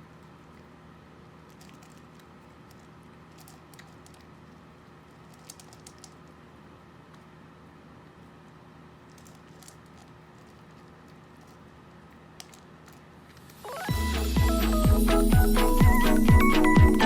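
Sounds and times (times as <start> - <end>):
low room hum: 0.0 - 17.0
faint light clicks and scratches: 1.4 - 6.4.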